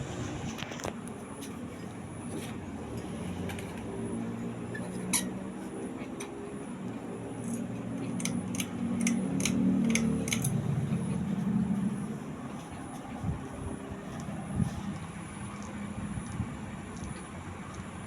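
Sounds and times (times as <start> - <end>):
ceiling fan motor hum: 0.0 - 18.0
sharp clicks: 7.5 - 10.7.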